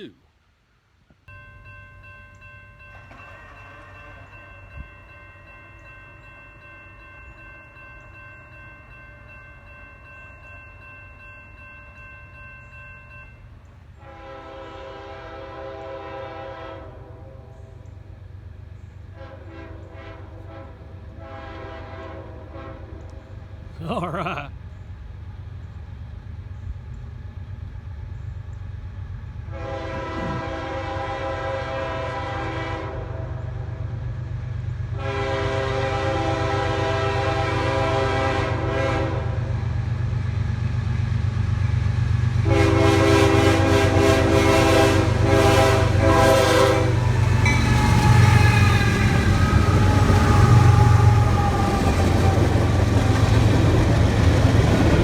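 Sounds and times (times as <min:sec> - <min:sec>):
train horn blasts: 0:14.0 - 0:17.9, 0:19.1 - 0:23.4, 0:29.5 - 0:33.9, 0:34.9 - 0:39.6, 0:42.4 - 0:51.8
locomotive engine rumble: 0:39.7 - 0:55.0.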